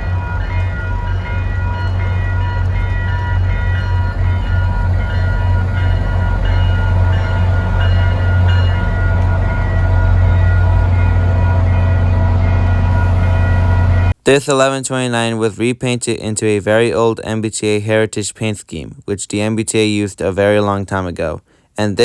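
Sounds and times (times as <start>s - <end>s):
diesel train rumbling past: 0.0s - 14.2s
high steady tones: 0.0s - 14.5s.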